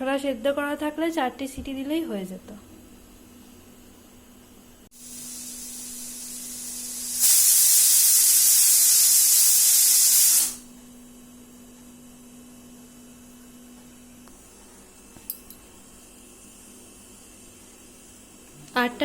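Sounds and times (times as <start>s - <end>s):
pressure cooker whistle: 5.1s - 10.6s.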